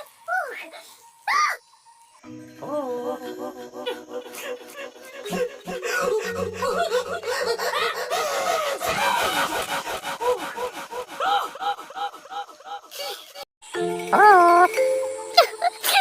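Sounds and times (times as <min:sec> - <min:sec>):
cartoon animal voices laughing: 0:03.3 - 0:13.4.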